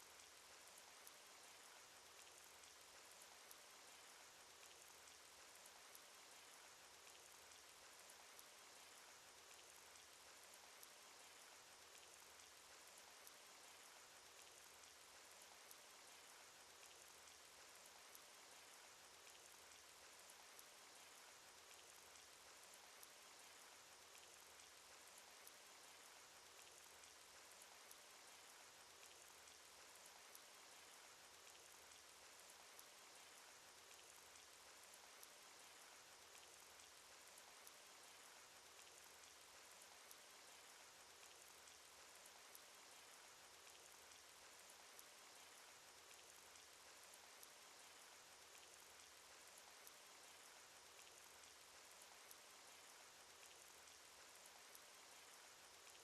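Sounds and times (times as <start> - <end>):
light raindrop ticks: 0.0 - 56.0.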